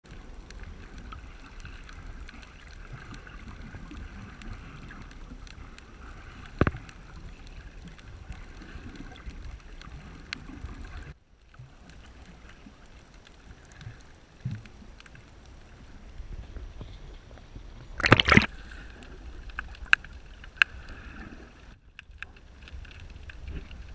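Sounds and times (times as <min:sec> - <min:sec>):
water lapping around a kayak: 0:00.0 - 0:23.9
small clicks: 0:19.4 - 0:20.9.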